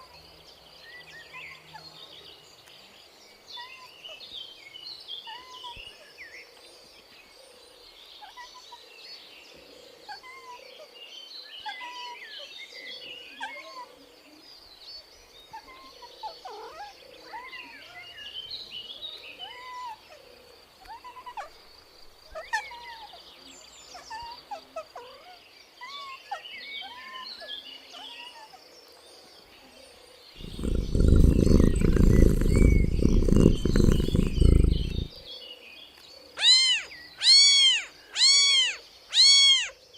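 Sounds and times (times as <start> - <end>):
birds chirping: 30.4 - 35.2.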